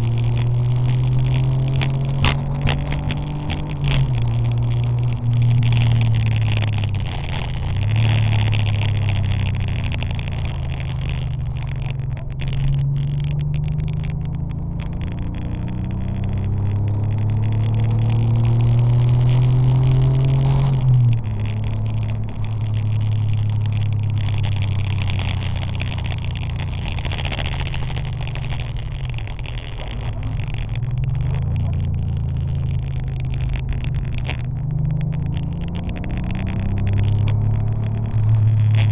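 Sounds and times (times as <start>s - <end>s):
car engine at speed: 0.0s - 38.9s.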